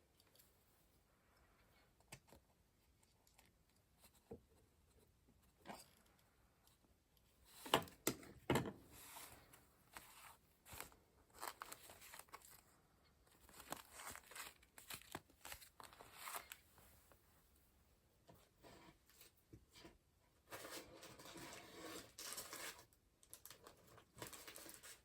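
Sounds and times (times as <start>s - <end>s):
paper rustling and crinkling: 9.0s - 12.7s, 13.3s - 16.8s, 20.5s - 25.0s.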